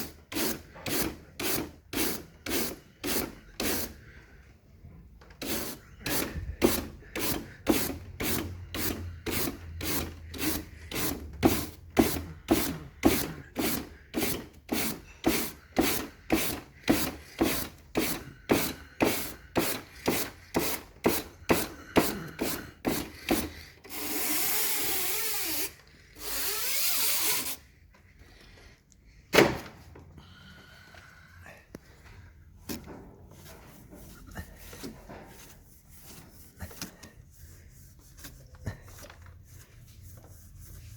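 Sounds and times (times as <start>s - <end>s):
brush scrubbing: 5.4s - 23.6s, 33.4s - 40.9s.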